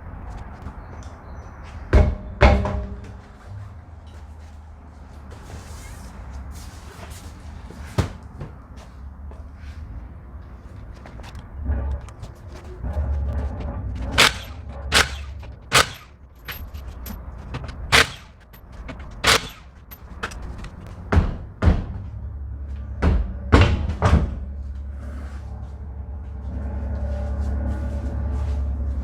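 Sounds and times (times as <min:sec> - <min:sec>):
steady low hum: 0:09.9 - 0:29.0
hand tools knocking and clanking: 0:11.8 - 0:21.9.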